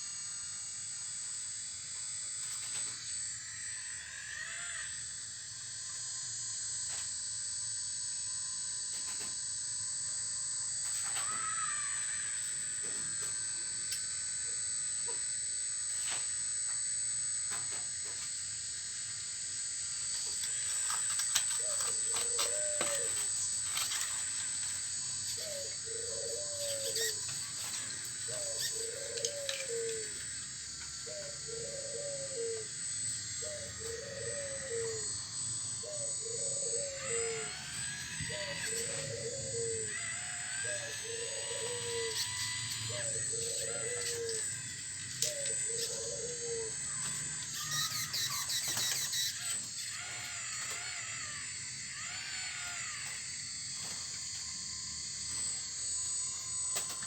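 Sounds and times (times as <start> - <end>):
electric motor whine: 0.0 - 57.0
dove cooing: 21.4 - 24.1, 25.4 - 30.3, 31.0 - 32.8, 33.4 - 35.1, 35.7 - 51.4.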